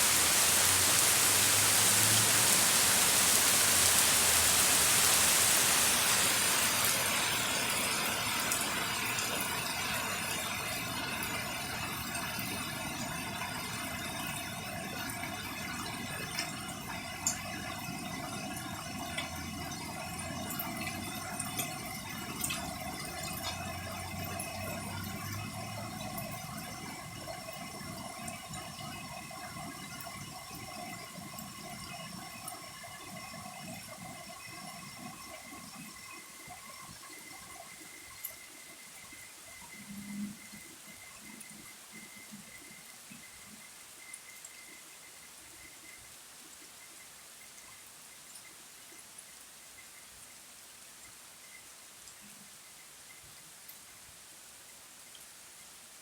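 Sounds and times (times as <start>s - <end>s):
heavy rain pouring: 0.0s - 35.2s
drips ticking: 0.0s - 50.3s
faint steady hum: 0.0s - 56.0s.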